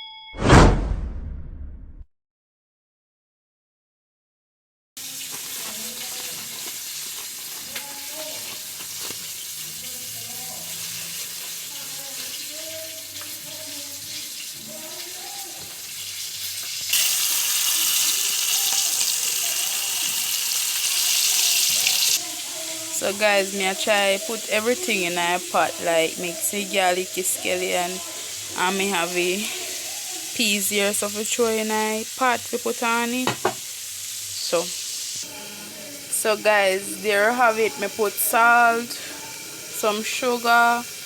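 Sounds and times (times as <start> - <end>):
oil sizzling: 5.0 - 41.0
faint voices: 21.7 - 31.8, 35.3 - 40.8.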